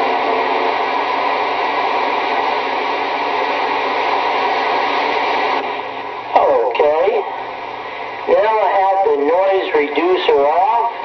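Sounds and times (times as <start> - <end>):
radio static hiss: 0.0 - 11.0.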